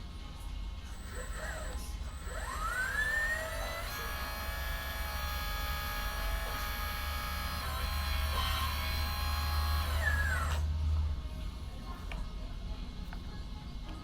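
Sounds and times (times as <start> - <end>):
electric motor whine: 0.8 - 10.7.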